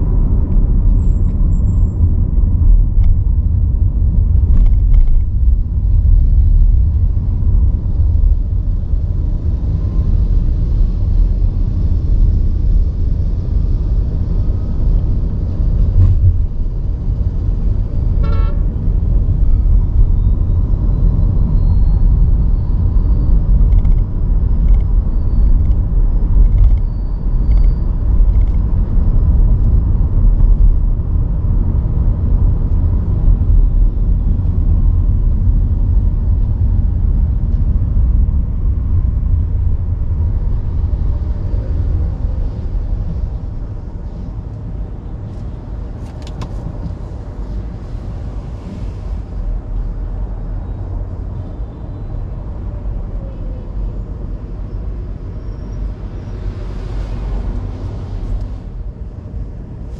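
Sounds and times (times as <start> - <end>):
car driving rumble: 0.0 - 59.9
short car horn toot: 18.2 - 18.7.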